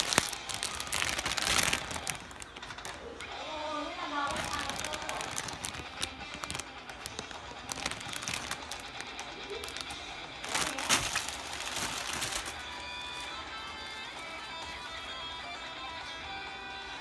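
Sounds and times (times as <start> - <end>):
plastic packaging crinkling: 0.0 - 16.0
plastic parts clicking: 4.3 - 14.8.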